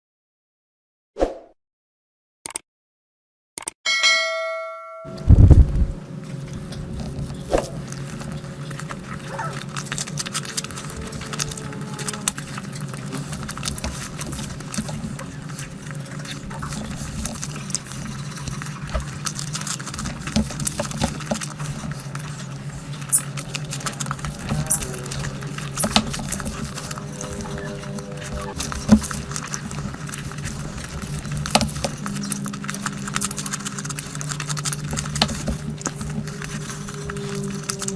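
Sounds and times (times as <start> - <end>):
ringing chime: 3.9 - 5.3
low hum: 4.3 - 37.9
people eating by hand: 5.1 - 37.9.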